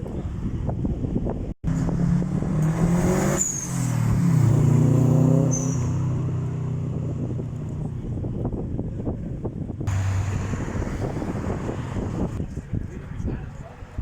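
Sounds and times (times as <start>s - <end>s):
car engine revving hard: 1.7s - 6.9s.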